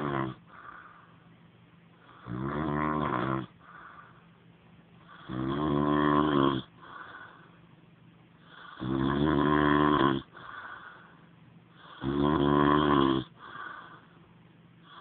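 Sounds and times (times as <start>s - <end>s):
man snoring: 0.0s - 0.9s, 2.1s - 4.0s, 5.1s - 7.4s, 8.5s - 11.1s, 11.8s - 14.1s
soft breathing: 0.0s - 2.3s, 3.5s - 5.3s, 6.7s - 7.8s, 10.2s - 12.0s, 13.3s - 15.0s.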